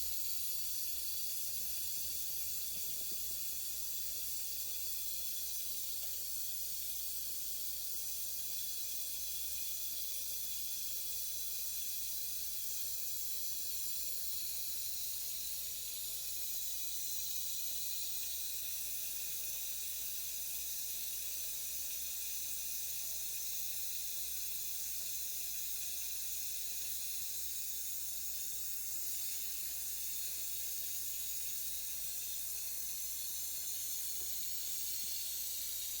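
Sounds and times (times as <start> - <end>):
shower running: 28.9 - 36.0.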